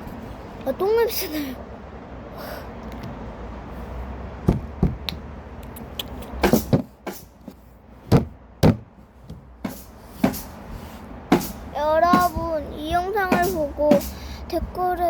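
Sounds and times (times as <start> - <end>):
sharp knocks and taps: 4.4 - 10.4.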